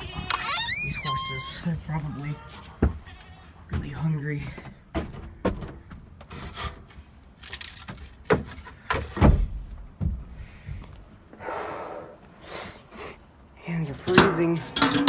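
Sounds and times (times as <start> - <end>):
knocks and thumps: 3.7 - 6.3, 8.3 - 10.8.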